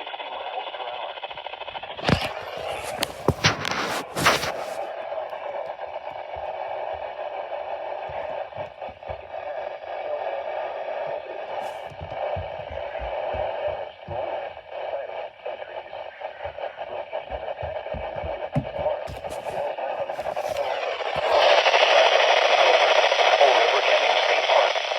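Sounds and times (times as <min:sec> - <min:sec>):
static crackles and pops: 0:01.9 - 0:06.5
radio static hiss: 0:02.0 - 0:05.0, 0:11.0 - 0:17.0, 0:19.0 - 0:24.9.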